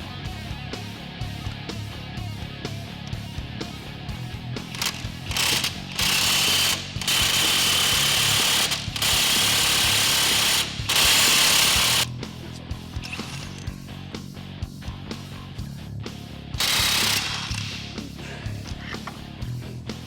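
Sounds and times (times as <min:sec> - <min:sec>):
background music: 0:00.0 - 0:20.0
impact wrench: 0:04.7 - 0:12.1, 0:16.6 - 0:18.0.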